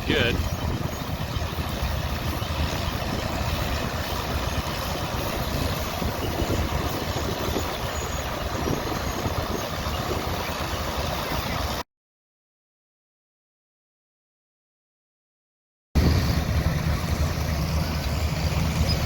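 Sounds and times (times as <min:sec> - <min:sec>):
harvest machinery engine rumble: 0:00.0 - 0:11.8, 0:16.0 - 0:19.0
wind buffeting microphone: 0:00.0 - 0:11.8, 0:16.0 - 0:19.0.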